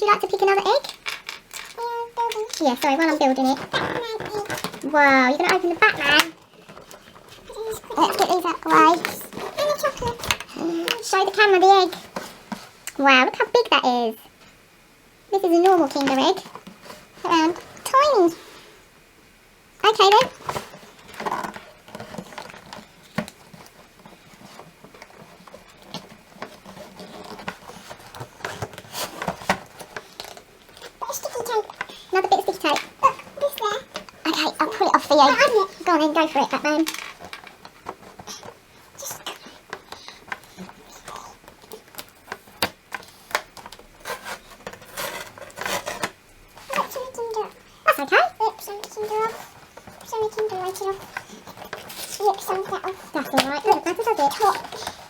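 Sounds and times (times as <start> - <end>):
wrapping rustling and tearing: 0.0 - 13.4, 15.5 - 18.7, 19.9 - 55.0
cardboard box being handled: 20.1 - 47.2.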